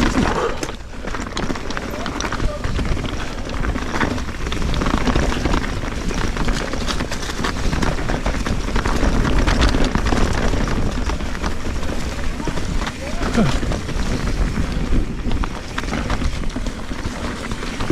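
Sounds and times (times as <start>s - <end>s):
bike clacks and rattles: 0.0s - 17.9s
bike tyres rumbling over dirt: 0.0s - 17.9s
wind rumbling on microphone: 0.0s - 17.9s.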